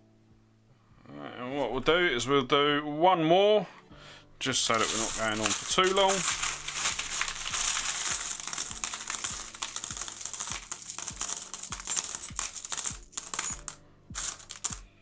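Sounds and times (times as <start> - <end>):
metal coins clinking: 4.6 - 15.0.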